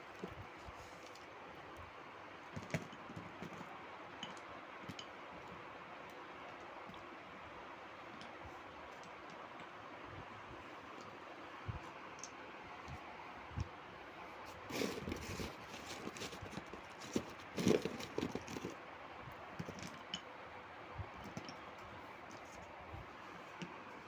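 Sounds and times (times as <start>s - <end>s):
objects knocking and clattering: 14.8s - 18.8s, 19.6s - 20.3s, 21.2s - 21.7s.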